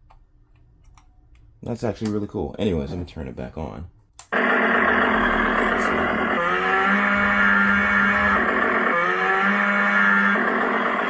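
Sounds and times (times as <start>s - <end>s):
recorded chainsaw engine sound: 4.4s - 11.0s.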